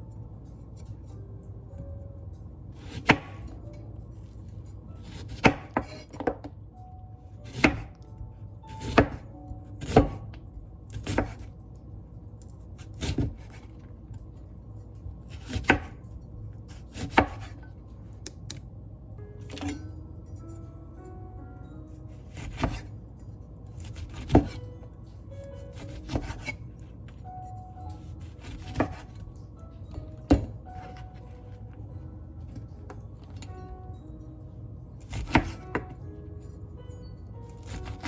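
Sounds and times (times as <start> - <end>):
knife chopping on cutting board: 2.8 - 3.6, 5.0 - 6.4, 7.4 - 8.0, 8.7 - 9.2, 9.8 - 11.5, 12.8 - 13.7, 15.3 - 16.0, 16.7 - 17.6, 22.2 - 22.9, 23.8 - 24.6, 25.7 - 26.6, 28.1 - 29.2, 35.0 - 35.9.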